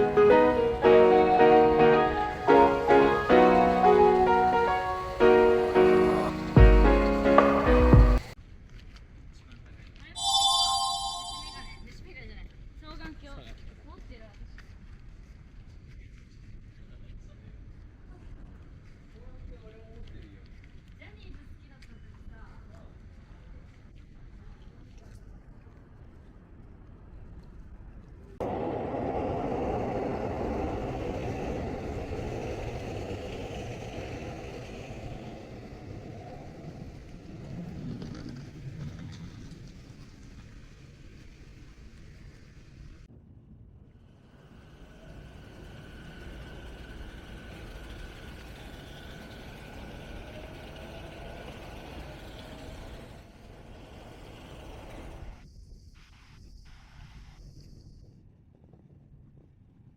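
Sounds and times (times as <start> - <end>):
road traffic rumble: 0.0 - 8.4, 28.4 - 41.3, 44.2 - 55.4
vehicle engine and tyres: 0.0 - 8.4, 28.2 - 43.1, 44.0 - 55.5.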